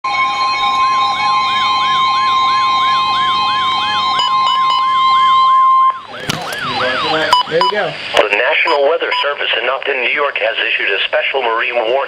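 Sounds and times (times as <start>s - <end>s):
rising siren-like sweep: 0.1s - 7.9s
steady high alarm tone: 0.1s - 8.0s.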